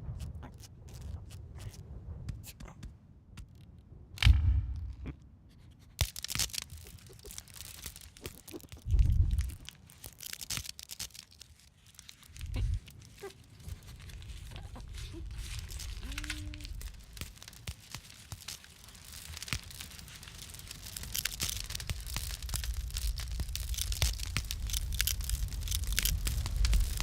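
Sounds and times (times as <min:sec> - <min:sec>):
crackling and crumpling: 0:00.0 - 0:27.0
heavy low thuds: 0:04.2 - 0:05.2.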